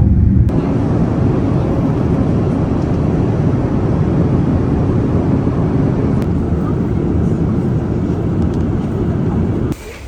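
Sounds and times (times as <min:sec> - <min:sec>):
jet airliner cabin roar: 0:00.0 - 0:10.0.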